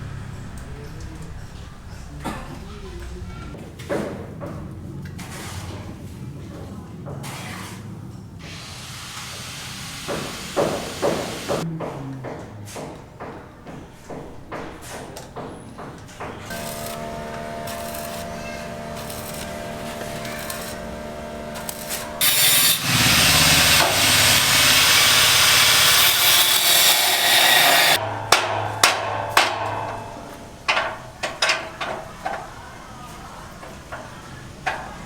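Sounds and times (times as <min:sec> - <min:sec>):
sharp knocks and clatters: 0:10.2 - 0:32.5
power tool cutting: 0:16.5 - 0:28.0
power tool motor humming: 0:16.5 - 0:28.0.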